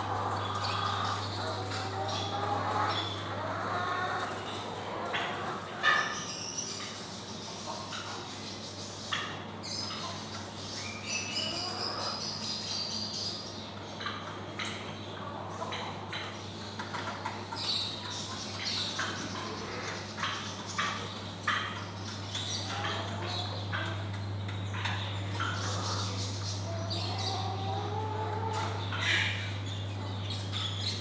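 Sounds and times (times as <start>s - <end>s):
steady low hum: 0.0s - 5.8s, 21.3s - 31.0s
chickens clucking and squawking: 0.0s - 31.0s.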